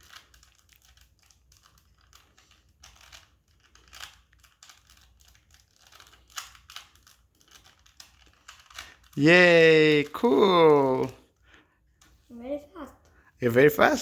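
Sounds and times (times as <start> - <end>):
puzzle cube twisting clicks: 0.0 - 10.1.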